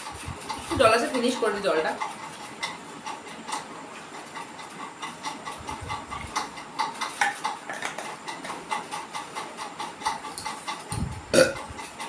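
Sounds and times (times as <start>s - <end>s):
person gulping water: 10.9s - 11.9s.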